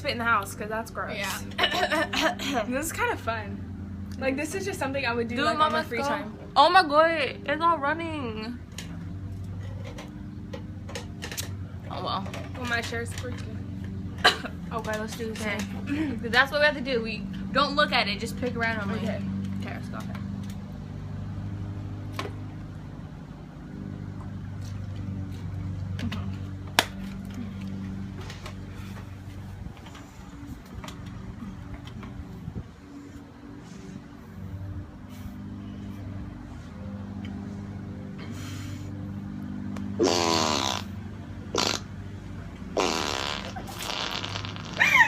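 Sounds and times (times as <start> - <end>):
lawnmower engine running: 0.9 - 45.0
fart sound effects: 40.0 - 41.9, 42.8 - 45.0.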